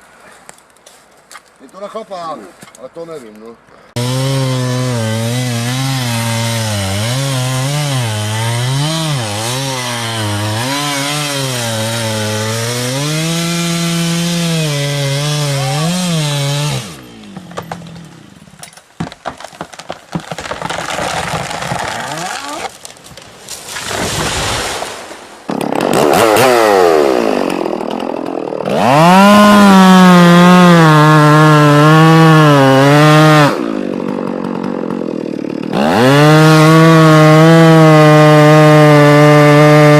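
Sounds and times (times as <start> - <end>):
chainsaw cutting: 3.9 - 22.9, 25.4 - 39.9
knocks and crackling: 17.3 - 23.3.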